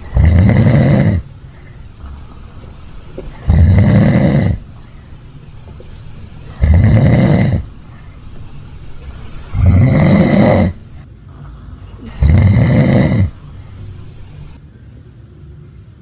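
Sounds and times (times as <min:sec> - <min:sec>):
person snoring loudly: 0:00.0 - 0:02.2, 0:03.2 - 0:04.8, 0:06.4 - 0:08.1, 0:09.5 - 0:11.0, 0:12.0 - 0:14.3.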